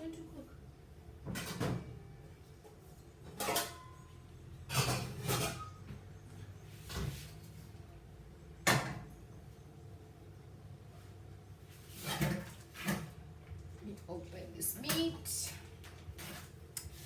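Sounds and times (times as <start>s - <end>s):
kitchen bumps and clatters: 3.2s - 4.1s, 4.7s - 6.1s, 8.7s - 9.2s, 11.8s - 13.2s.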